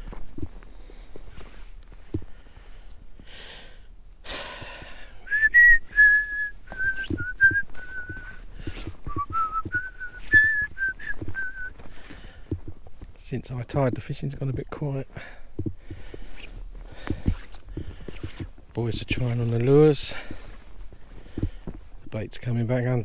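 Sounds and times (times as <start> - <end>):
soft low thuds: 0.0 - 3.3, 4.6 - 23.0
person whistling a tune: 5.3 - 11.7.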